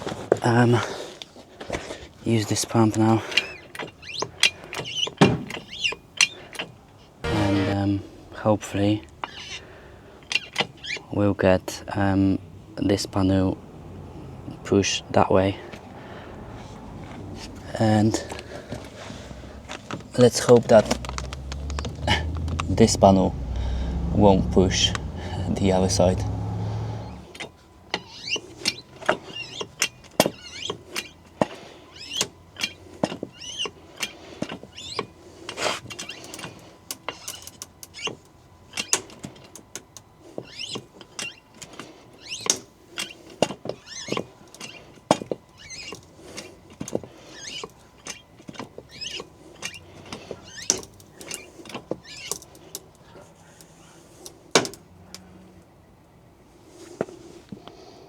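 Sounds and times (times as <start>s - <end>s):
short squeaks: 3.5s - 8.3s, 10.2s - 11.2s, 18.4s - 27.3s, 43.8s - 44.9s, 45.5s - 46.1s, 47.2s - 52.5s.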